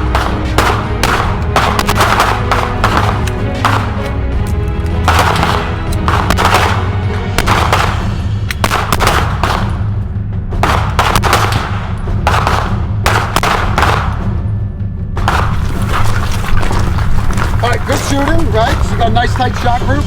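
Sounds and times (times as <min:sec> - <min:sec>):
pistol shots: 0:00.0 - 0:04.2, 0:05.0 - 0:10.0, 0:10.6 - 0:14.4, 0:15.2 - 0:15.8
background music with low beat: 0:00.0 - 0:20.0.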